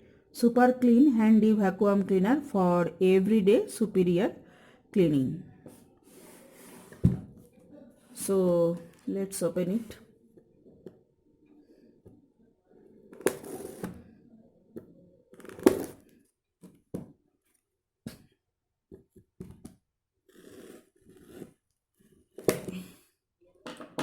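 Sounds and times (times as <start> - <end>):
packing tape being cut and torn: 13.2 - 13.9, 15.4 - 16.0.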